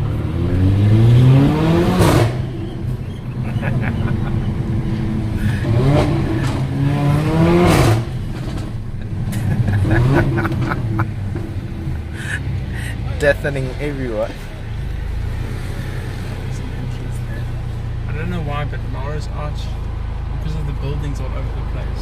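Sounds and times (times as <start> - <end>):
car engine accelerating hard: 0.0 - 22.0
exhaust crack on upshift: 1.9 - 13.1.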